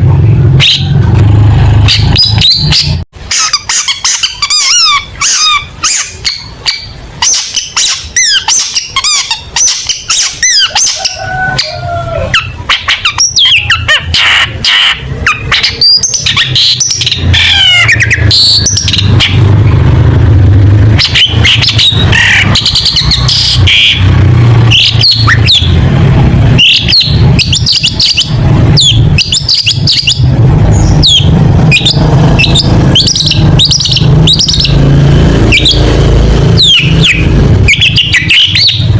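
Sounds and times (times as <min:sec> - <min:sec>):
bird singing rapid chirps: 0:00.0 - 0:20.1, 0:20.7 - 0:38.9
steady low hum: 0:16.4 - 0:38.9.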